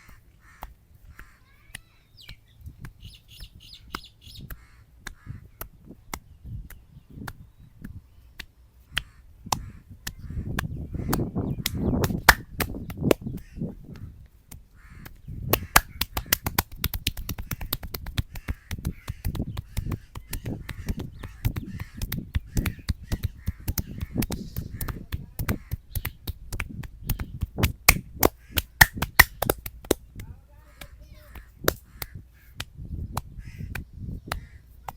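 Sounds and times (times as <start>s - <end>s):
hands slapping and tapping head: 0.6s - 13.5s, 14.3s - 34.9s
palm rubbing on scalp: 15.6s - 25.9s.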